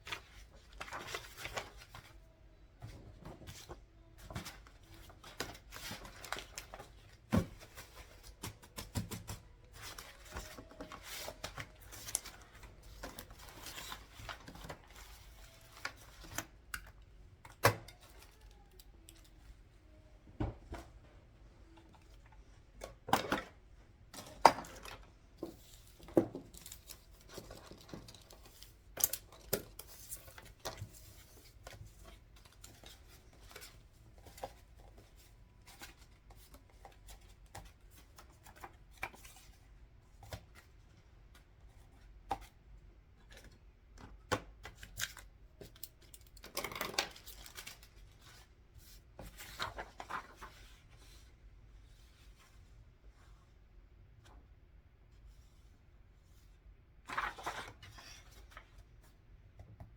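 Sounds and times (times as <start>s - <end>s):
paper rustling: 47.1s - 51.2s, 57.1s - 58.6s.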